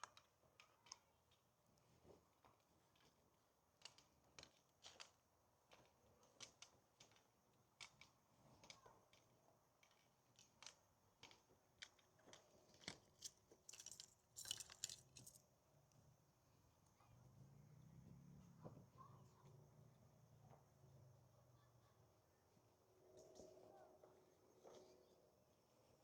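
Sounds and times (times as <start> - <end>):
faint clicks and taps: 0.0 - 3.2, 3.8 - 15.4.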